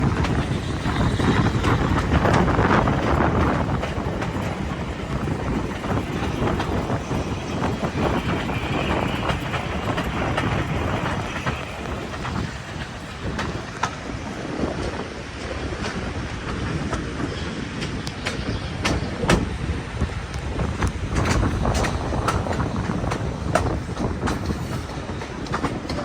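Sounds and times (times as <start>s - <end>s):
train rumbling: 0.0s - 26.0s
wheels clicking over rail: 17.8s - 26.0s.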